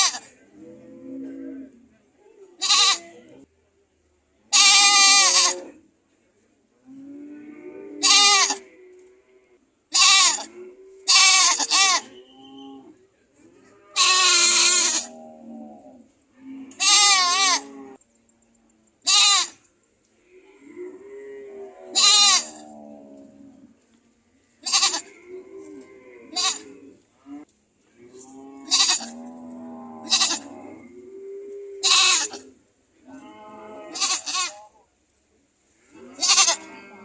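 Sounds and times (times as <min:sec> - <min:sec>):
goats bleating: 0:00.0 - 0:00.3, 0:02.6 - 0:03.2, 0:04.5 - 0:05.6, 0:08.0 - 0:08.7, 0:09.9 - 0:12.1, 0:13.9 - 0:15.2, 0:16.7 - 0:17.7, 0:19.1 - 0:19.6, 0:21.9 - 0:22.7, 0:24.6 - 0:26.8, 0:28.6 - 0:29.3, 0:30.0 - 0:30.6, 0:31.8 - 0:32.4, 0:33.8 - 0:34.6, 0:36.0 - 0:37.0.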